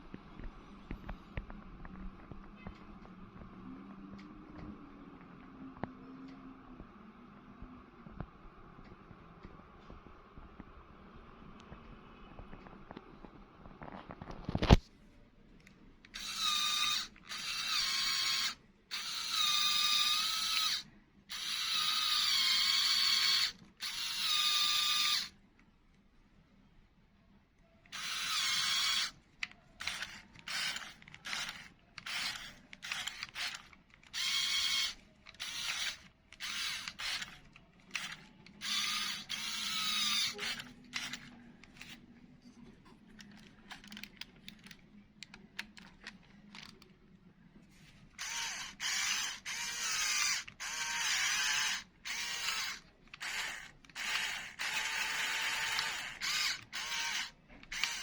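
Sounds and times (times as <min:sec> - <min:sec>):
electric motor and gears whirring: 0:16.1 - 0:25.4, 0:27.9 - 0:42.0, 0:48.1 - 0:58.0.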